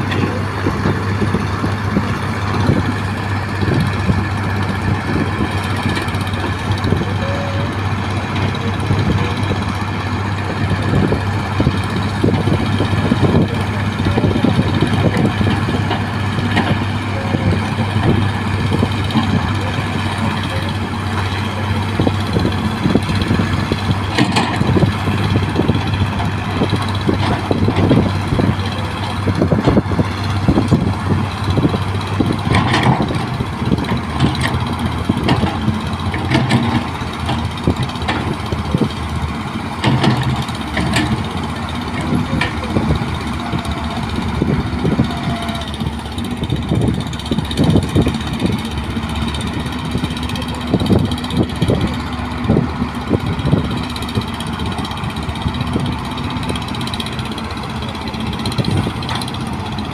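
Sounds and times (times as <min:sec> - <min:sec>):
excavator diesel engine running: 0:00.0 - 0:59.9
metal knocks and clanks: 0:39.8 - 0:42.8.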